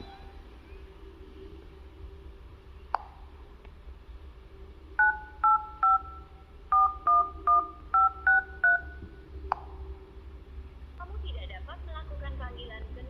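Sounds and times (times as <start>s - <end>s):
touch-tone keypad beeps: 5.0s - 9.0s.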